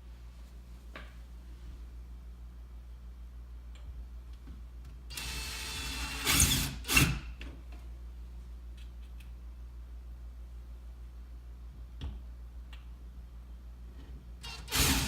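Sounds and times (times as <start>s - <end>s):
cordless drill driving screw: 14.4s - 15.0s.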